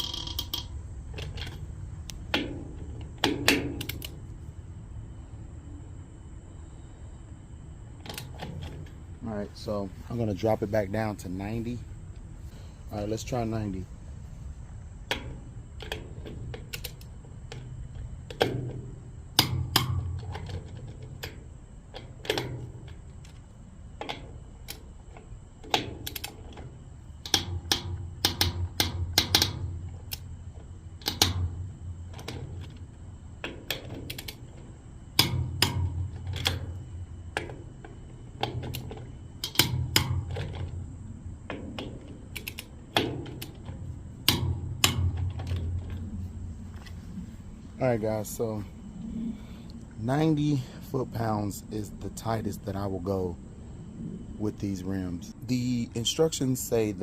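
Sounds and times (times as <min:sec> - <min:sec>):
torque wrench clicking: 0:00.0 - 0:02.3, 0:03.1 - 0:04.2, 0:25.6 - 0:26.6.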